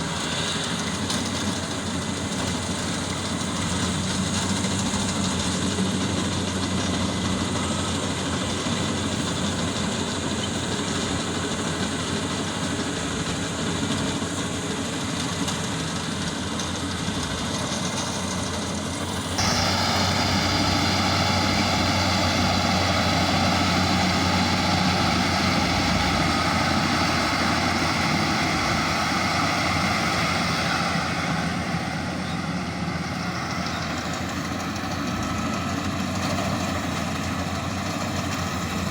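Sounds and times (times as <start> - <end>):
combine harvester engine drone: 0.0 - 38.9
high whining tones: 19.4 - 32.0.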